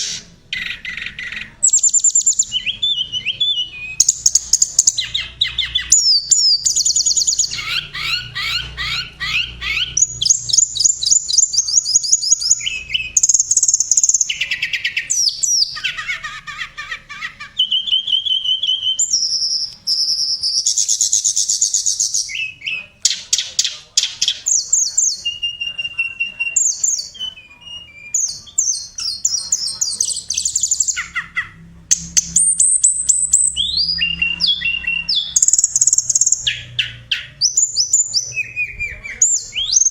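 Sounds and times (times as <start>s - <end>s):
songbird singing trills and chirps: 0.0s - 39.9s.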